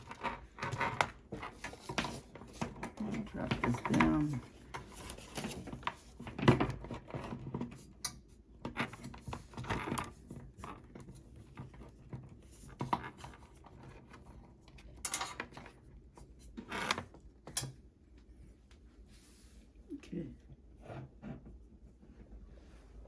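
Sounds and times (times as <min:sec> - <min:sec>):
cables rubbing and rustling: 0:00.0 - 0:08.0.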